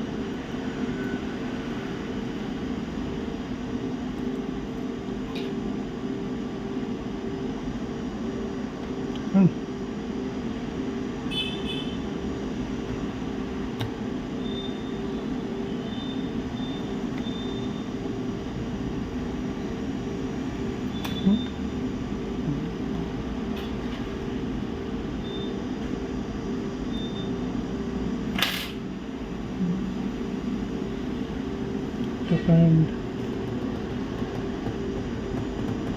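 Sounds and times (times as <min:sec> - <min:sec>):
electrical hum: 0:00.0 - 0:35.9.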